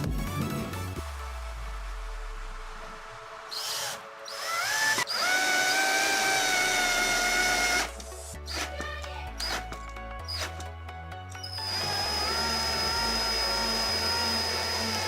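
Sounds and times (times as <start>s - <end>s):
cordless drill motor whining: 3.5s - 8.8s, 11.4s - 15.0s.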